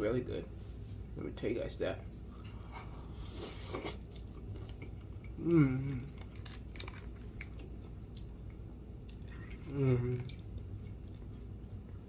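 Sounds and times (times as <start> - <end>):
person chewing crunchy food: 2.7 - 12.0
person humming: 5.4 - 6.1.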